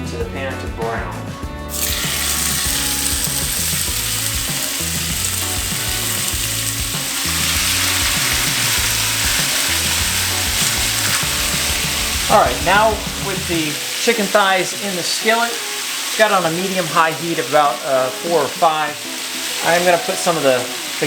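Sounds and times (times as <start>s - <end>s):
chicken sizzling in hot oil: 1.7s - 21.0s.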